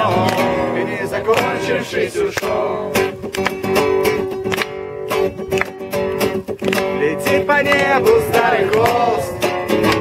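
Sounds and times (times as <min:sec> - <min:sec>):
group singing: 0:00.0 - 0:03.3, 0:07.3 - 0:10.0
acoustic guitar strumming: 0:00.0 - 0:10.0.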